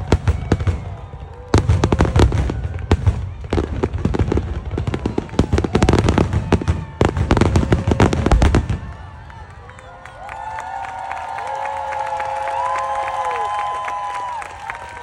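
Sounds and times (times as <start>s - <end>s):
fireworks bangs and crackling: 0.0s - 9.8s.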